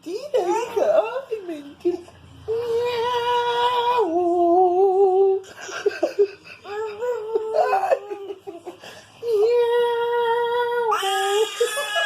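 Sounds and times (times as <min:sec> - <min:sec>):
baby crying: 0:10.7 - 0:12.0.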